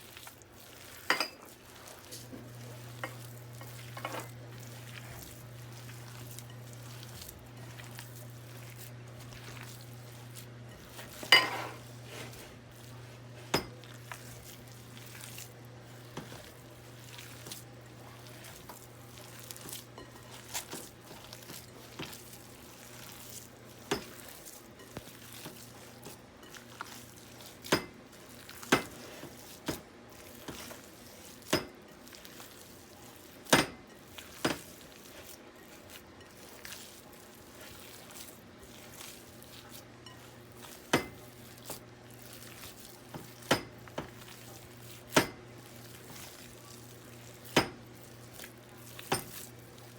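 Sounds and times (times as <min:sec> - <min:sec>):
dishes and utensils clinking: 0:00.8 - 0:04.4, 0:10.7 - 0:12.4, 0:13.4 - 0:14.2, 0:49.0 - 0:49.5.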